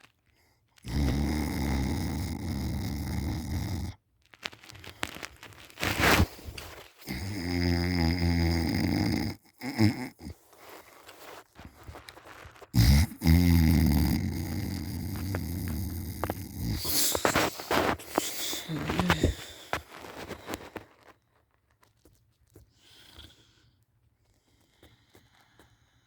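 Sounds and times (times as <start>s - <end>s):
person snoring: 0.8s - 4.0s, 5.8s - 20.8s.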